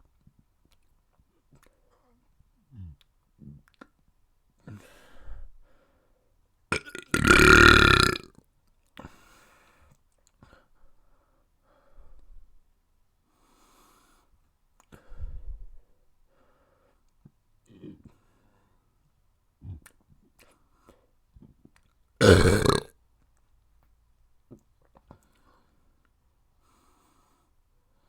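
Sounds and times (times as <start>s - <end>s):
person burping: 6.8s - 8.3s, 22.2s - 22.9s.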